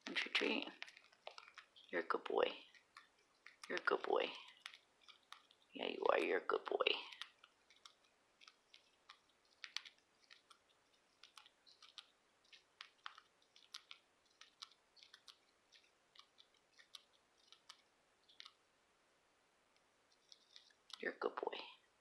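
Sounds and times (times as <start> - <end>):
bird beak clicking and crunching: 0.0 - 18.7, 19.7 - 21.4.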